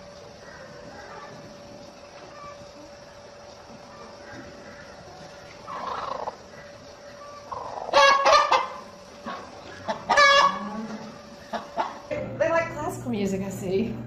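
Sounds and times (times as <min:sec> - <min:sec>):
faint steady hum: 0:00.0 - 0:14.0
fowl rapid pulsing calls: 0:03.7 - 0:12.1.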